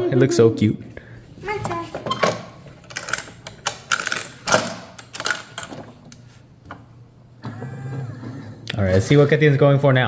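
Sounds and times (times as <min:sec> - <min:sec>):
toy claw machine clicking: 0:02.9 - 0:05.8.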